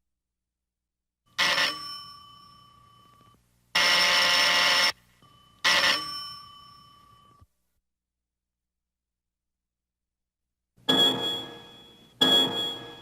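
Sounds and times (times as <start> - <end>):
bell ringing: 5.3 - 7.4, 10.9 - 13.0.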